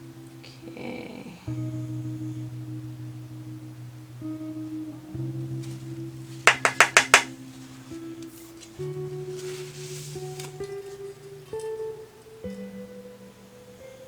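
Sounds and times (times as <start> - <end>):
soft background music: 0.0 - 14.0
rapid sharp clicks: 6.5 - 7.3.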